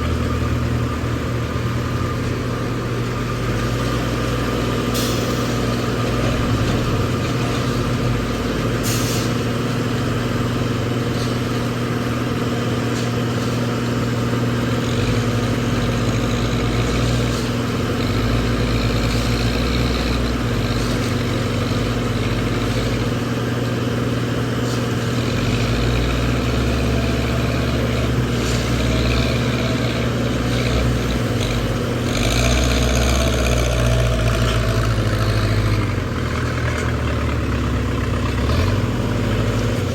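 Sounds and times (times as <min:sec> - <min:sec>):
heavy diesel engine running: 0:00.0 - 0:39.9
clatter: 0:14.6 - 0:23.3, 0:24.6 - 0:39.9.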